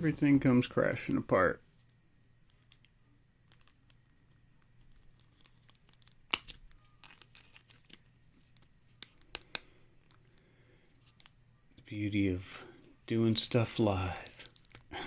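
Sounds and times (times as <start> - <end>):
plastic parts rustling: 3.5 - 9.4.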